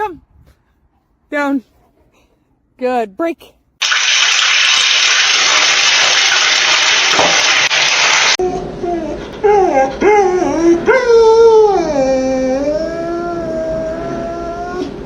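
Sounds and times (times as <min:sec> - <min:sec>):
dog howling: 0:08.4 - 0:15.0.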